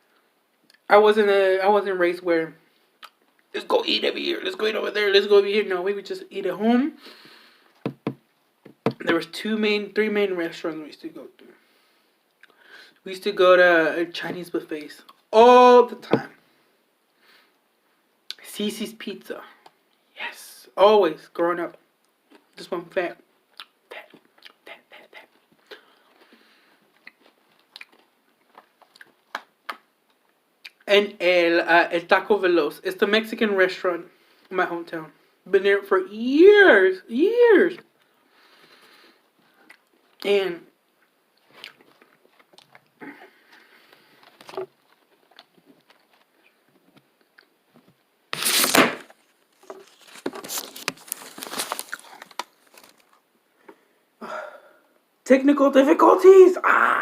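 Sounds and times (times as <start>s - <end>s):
chewing sandwich: 26.9s - 30.8s, 41.0s - 47.6s
crinkling and rustling: 41.4s - 53.3s.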